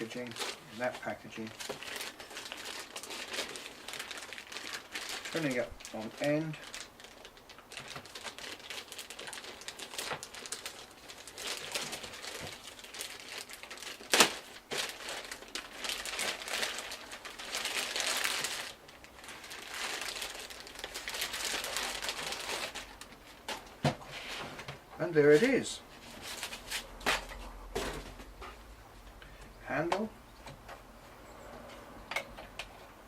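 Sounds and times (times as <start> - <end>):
packaging crinkling and rustling: 0.0 - 28.3.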